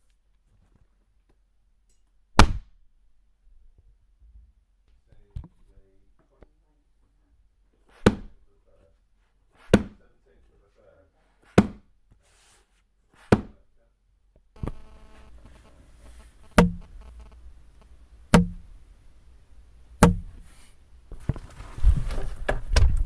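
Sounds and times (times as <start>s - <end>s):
faint steady hiss: 14.6s - 23.0s.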